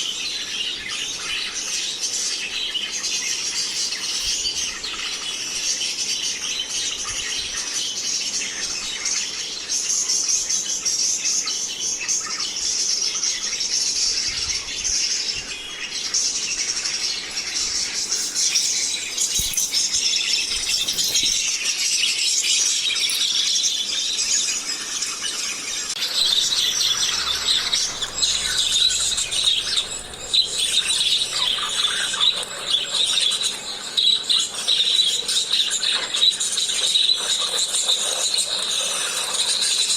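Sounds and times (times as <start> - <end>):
parrots chattering and squeaking: 2.7 - 5.8, 18.0 - 21.7, 22.5 - 24.2, 26.0 - 39.8.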